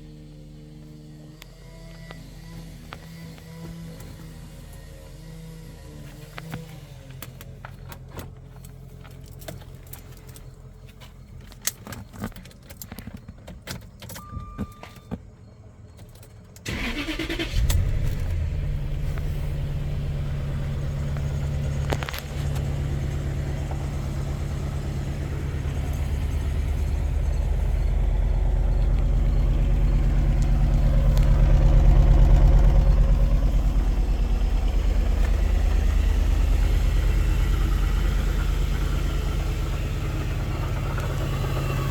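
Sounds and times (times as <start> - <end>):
car engine cranking and idling rough: 0.0 - 41.9
small clicks and rattles: 7.1 - 14.2
supercharger clanking: 16.7 - 41.9.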